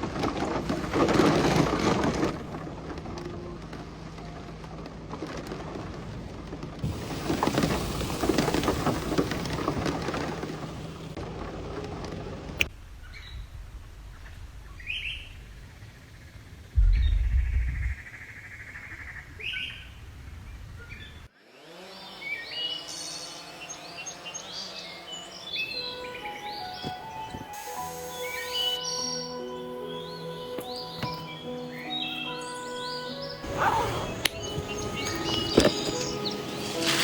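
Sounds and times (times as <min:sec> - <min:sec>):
heavy rain: 0:00.0 - 0:16.0
rolling thunder: 0:06.8 - 0:21.2
birds chirping: 0:12.6 - 0:37.0
low thump: 0:16.8 - 0:18.2.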